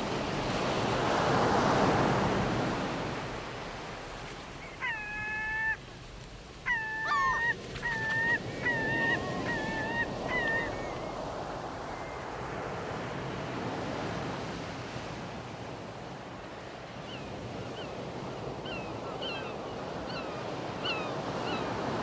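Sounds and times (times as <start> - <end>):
ocean waves: 0.0 - 22.0
bird calling: 4.6 - 5.9, 6.6 - 12.2, 18.6 - 21.7.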